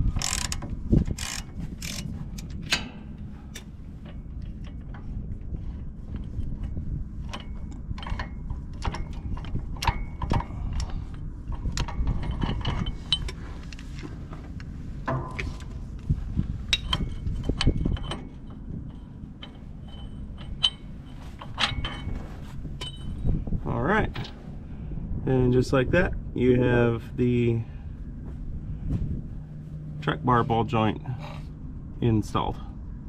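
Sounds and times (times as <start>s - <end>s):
hand ratchet clicking: 0.1s - 2.1s
metal tool clinks: 22.8s - 23.2s.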